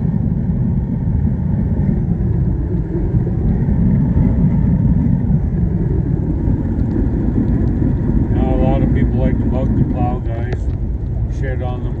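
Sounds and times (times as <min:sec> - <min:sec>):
road and tyre noise in car: 0:00.0 - 0:12.0.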